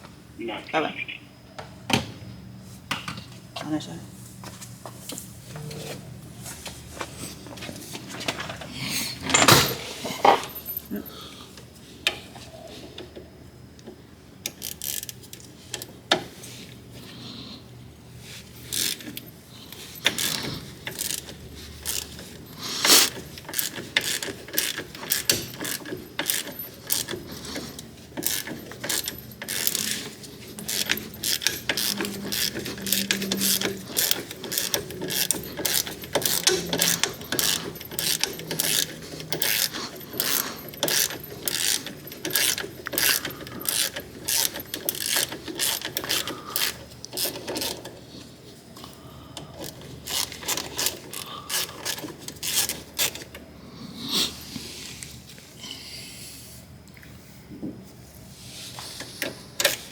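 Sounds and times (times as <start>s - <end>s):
ratchet wrench clicking: 14.4s - 15.9s, 18.6s - 47.9s, 49.6s - 53.3s.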